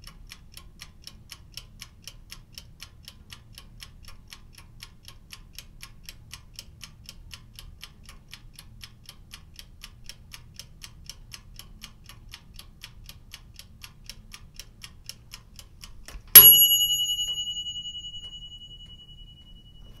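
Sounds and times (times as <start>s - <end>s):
mechanical timer ticking: 0.0s - 20.0s
timer bell ringing: 16.4s - 20.0s.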